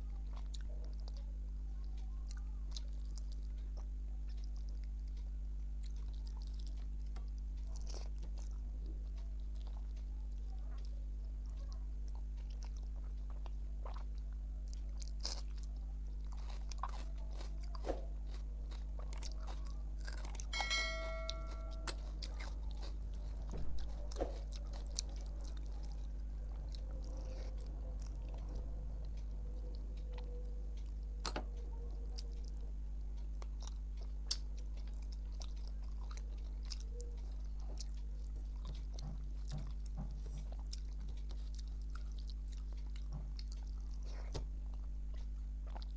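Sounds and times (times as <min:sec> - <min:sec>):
low electrical hum: 0:00.0 - 0:45.9
soft chewing: 0:00.0 - 0:45.9
ringing clink: 0:20.5 - 0:22.1.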